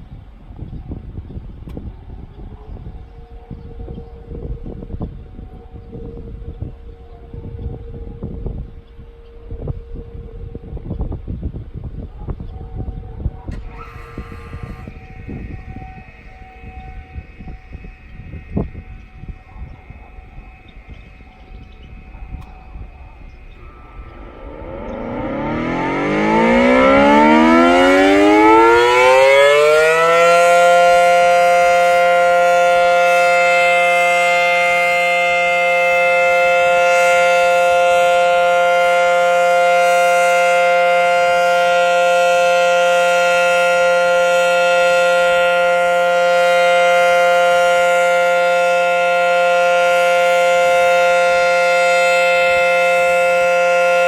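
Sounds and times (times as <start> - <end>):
rotating warning siren: 0.0 - 54.0.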